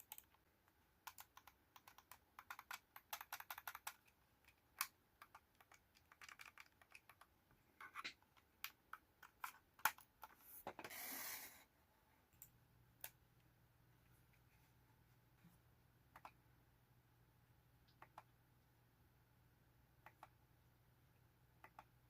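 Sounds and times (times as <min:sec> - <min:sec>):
computer mouse clicks and taps: 0:00.0 - 0:10.8, 0:16.1 - 0:16.4, 0:17.8 - 0:18.4, 0:20.0 - 0:20.4, 0:21.6 - 0:22.0.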